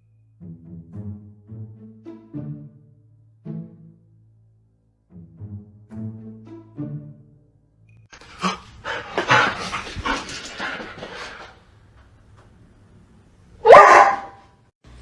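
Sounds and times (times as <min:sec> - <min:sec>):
dog barking and yipping: 0:13.6 - 0:14.4.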